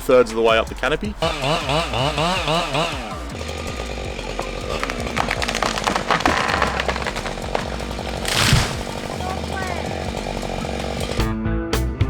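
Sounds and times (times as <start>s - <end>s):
chainsaw idling: 1.1s - 11.3s
sharp clicks and cracks: 3.2s - 11.2s.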